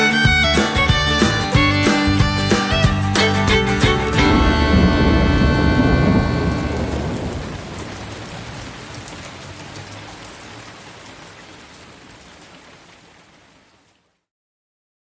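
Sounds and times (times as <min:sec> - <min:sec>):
steady rain falling: 0:03.5 - 0:14.3
low rumble: 0:04.1 - 0:08.6.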